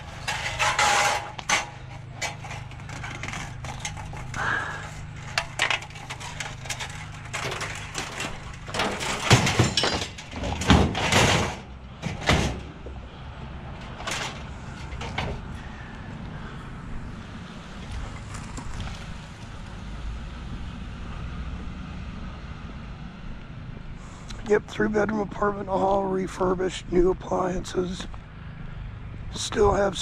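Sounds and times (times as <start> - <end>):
scrap knocking and rattling: 0.0 - 12.8.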